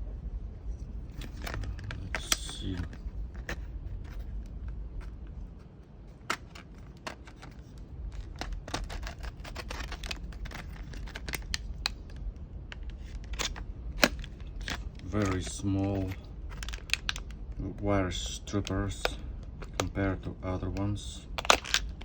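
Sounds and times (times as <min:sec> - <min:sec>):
packaging being opened: 0:01.2 - 0:04.3, 0:06.3 - 0:17.4, 0:21.4 - 0:22.0
wire strippers clicking and rattling: 0:01.2 - 0:05.2, 0:06.2 - 0:20.0.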